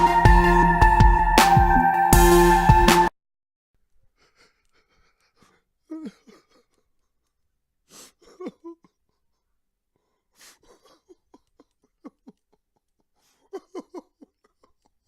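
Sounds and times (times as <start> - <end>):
man sobbing: 4.2 - 6.9, 8.0 - 9.2, 13.2 - 14.9.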